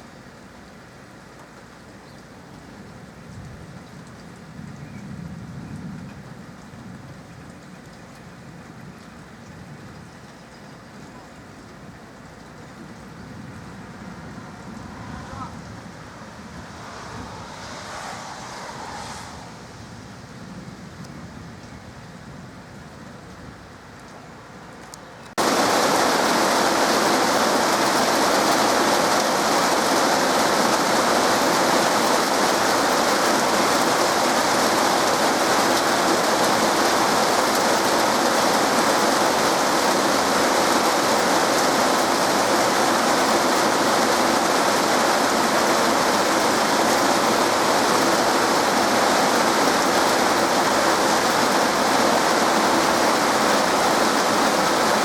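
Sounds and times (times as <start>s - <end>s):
heavy rain: 25.4s - 55.0s.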